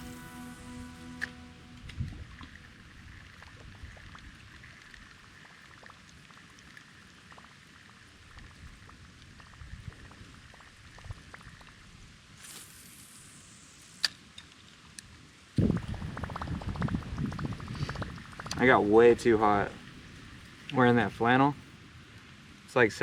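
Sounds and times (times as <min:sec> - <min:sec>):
soft steady hiss: 0:00.0 - 0:23.0
water dripping: 0:15.6 - 0:20.8.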